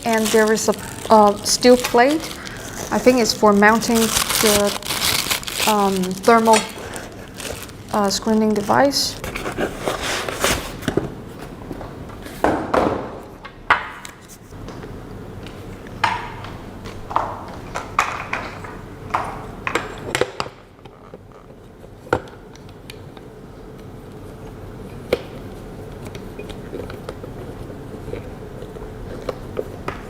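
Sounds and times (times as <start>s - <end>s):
rustling: 0.0s - 8.2s.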